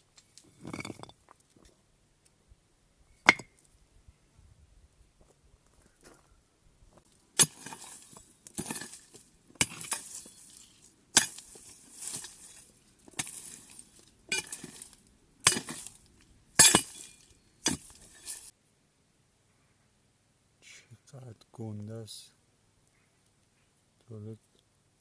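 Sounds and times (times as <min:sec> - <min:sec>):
hard objects clinking with rattle: 0:07.4 - 0:18.5.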